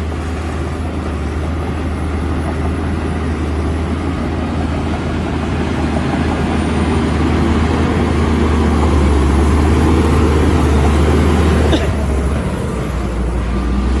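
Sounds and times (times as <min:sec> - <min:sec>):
bulldozer diesel engine running: 0:00.0 - 0:14.0.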